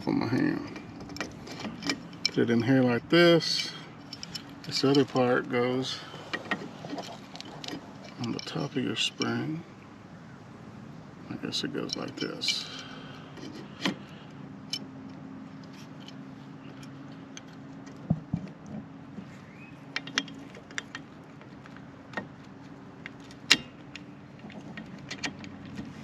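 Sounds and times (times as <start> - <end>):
small metal clicks and clinks: 3.6 - 5.3, 6.3 - 9.4, 11.8 - 12.9.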